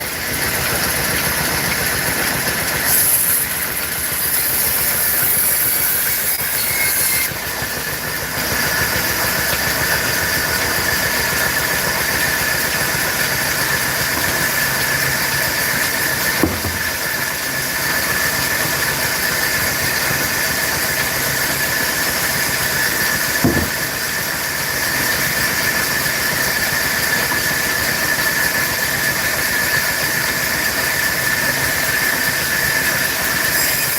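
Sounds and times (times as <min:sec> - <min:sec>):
woodworking machine whine and hiss: 0:00.0 - 0:33.9
short sharp knock: 0:16.4 - 0:17.0, 0:23.4 - 0:24.0.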